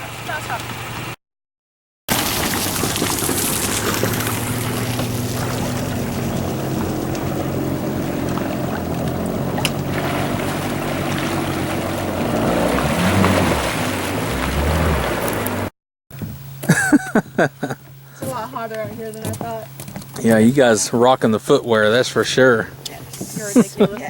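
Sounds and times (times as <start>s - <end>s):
jet ski engine: 0.0s - 1.2s, 2.1s - 15.7s, 16.6s - 24.0s
water wash: 2.1s - 15.7s.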